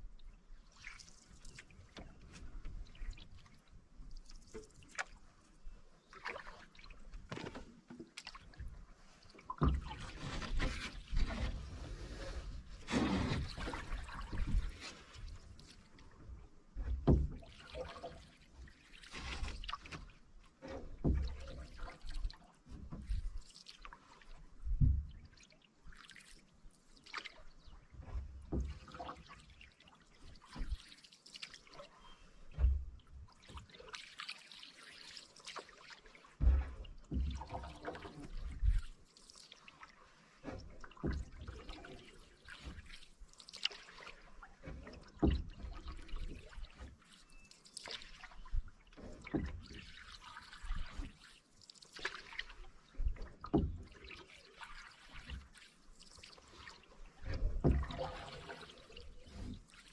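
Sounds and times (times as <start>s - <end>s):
paddle dipping through water: 0.0s - 59.9s
water dripping off paddle: 25.1s - 59.9s
short low knocks: 36.4s - 37.5s.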